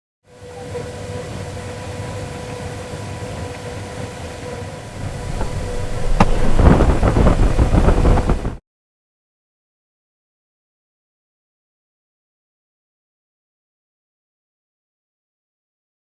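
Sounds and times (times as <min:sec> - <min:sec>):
blower humming: 0:03.4 - 0:08.6
gusty wind buffeting: 0:04.9 - 0:08.6.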